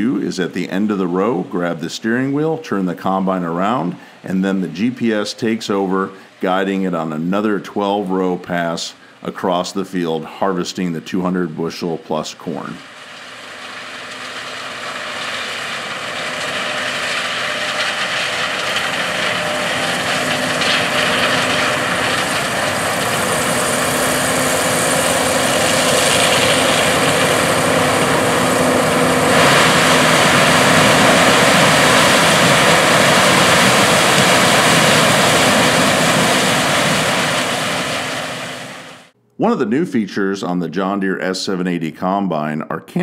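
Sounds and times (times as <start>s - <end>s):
combine harvester engine and threshing drone: 12.6s - 39.2s.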